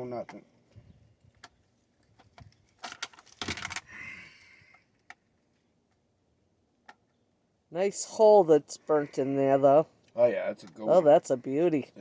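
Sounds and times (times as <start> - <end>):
small hard parts clicking: 2.2 - 3.9
small parts rattling: 2.2 - 3.9.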